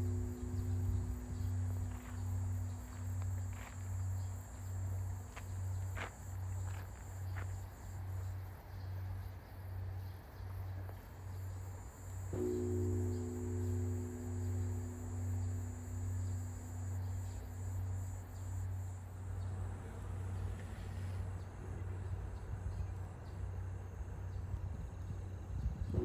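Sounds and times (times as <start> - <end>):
deep temple bell hum: 0.0 - 8.1, 11.2 - 23.4, 24.3 - 26.0
crickets chirring: 0.0 - 26.0.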